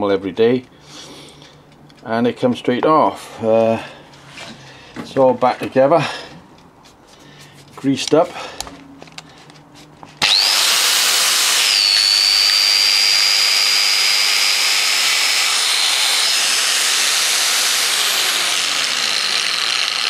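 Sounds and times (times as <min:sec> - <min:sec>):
angle grinder whining: 0:10.2 - 0:20.0.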